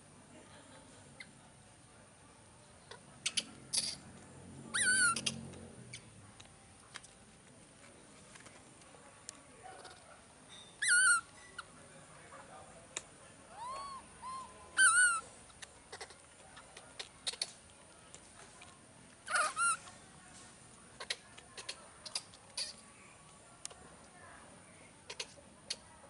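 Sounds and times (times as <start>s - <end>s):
baby monkey calling: 2.9s - 4.0s, 4.7s - 6.1s, 10.8s - 11.7s, 13.6s - 15.3s, 19.3s - 19.8s.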